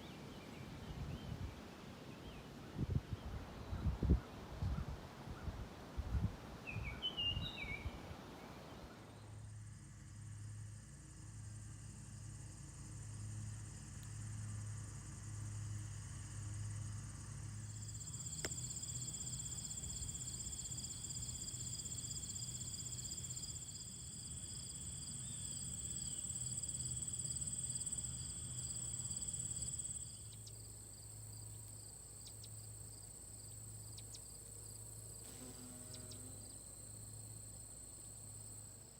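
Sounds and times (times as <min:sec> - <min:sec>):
insects trilling: 0:17.6 - 0:38.9.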